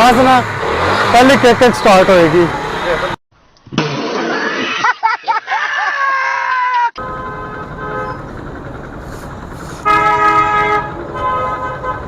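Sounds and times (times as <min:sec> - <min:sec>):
vehicle horn toots: 0:07.0 - 0:08.4, 0:09.8 - 0:12.0
low engine rumble: 0:07.0 - 0:12.0.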